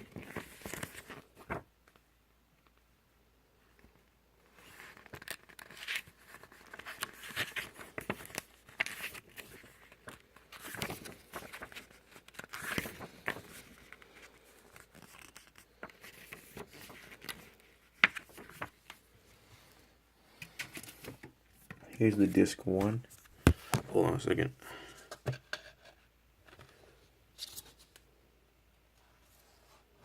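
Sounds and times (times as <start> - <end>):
paper and card rustling: 0.0 - 1.7, 4.6 - 19.1, 20.3 - 24.2, 27.4 - 28.0.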